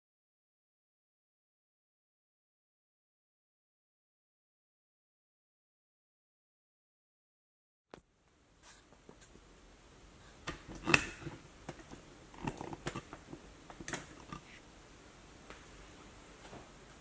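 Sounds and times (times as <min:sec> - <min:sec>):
laptop parts clicking and knocking: 0:10.4 - 0:14.4.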